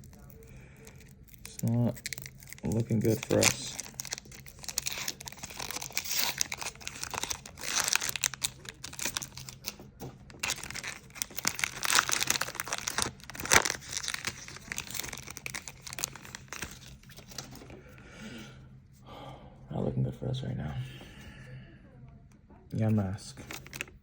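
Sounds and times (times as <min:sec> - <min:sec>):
foil wrapper crinkling and tearing: 0:00.0 - 0:17.7, 0:23.4 - 0:24.0.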